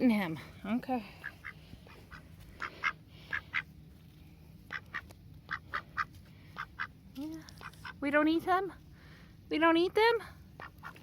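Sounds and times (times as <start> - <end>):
ducks quacking raspily: 1.1 - 3.7, 4.7 - 7.0, 10.5 - 11.0.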